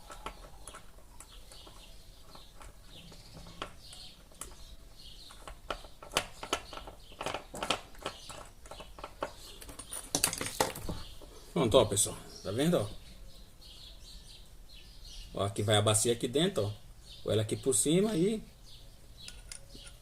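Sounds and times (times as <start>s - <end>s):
metal parts clicking and knocking: 0.0s - 11.0s, 19.2s - 20.0s.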